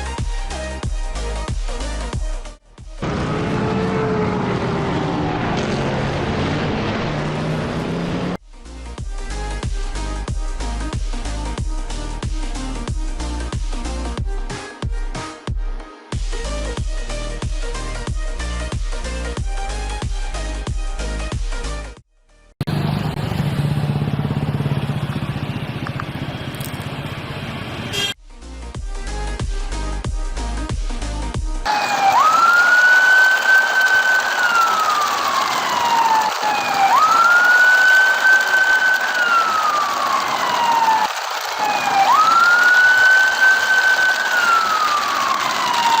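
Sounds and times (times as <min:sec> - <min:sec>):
siren wailing: 0:03.0 - 0:07.8, 0:31.7 - 0:46.0
vehicle engine running: 0:22.6 - 0:28.1, 0:31.7 - 0:46.0.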